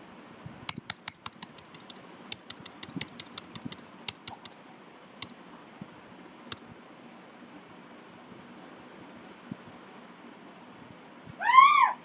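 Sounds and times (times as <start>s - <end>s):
keyboard key clicks: 0.7s - 4.6s.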